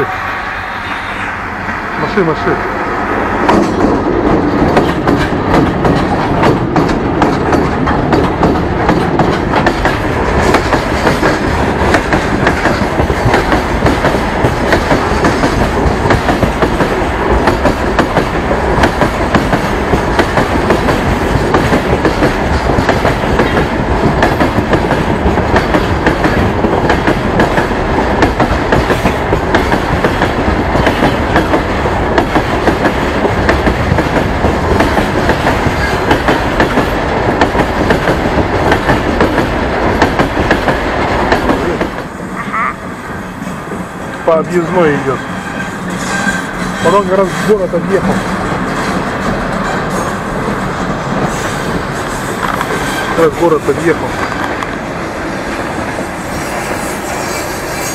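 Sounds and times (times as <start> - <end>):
train rumbling past: 0.0 - 57.9
wheels clacking over rail joints: 3.4 - 42.1.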